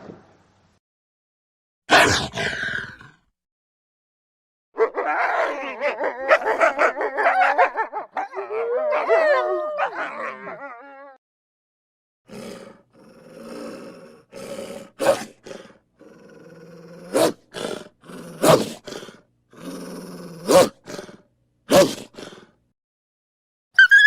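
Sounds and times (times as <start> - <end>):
wolf growling: 12.3 - 22.5
wolf snarling snaps: 14.3 - 22.6.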